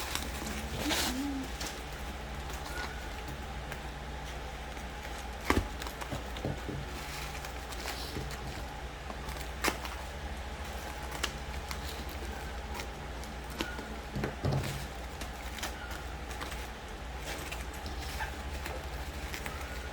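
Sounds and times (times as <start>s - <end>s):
steady low hum: 0.0s - 19.9s
taps on book packaging: 5.4s - 7.0s.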